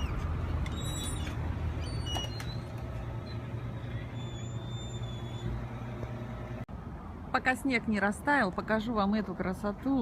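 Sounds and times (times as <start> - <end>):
vehicle engine rumbling: 0.0 - 7.3.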